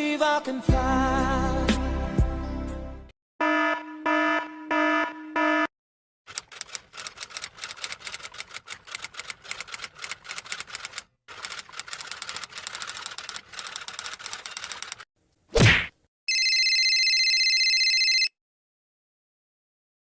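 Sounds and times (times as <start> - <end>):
rapid clicking: 6.3 - 15.0.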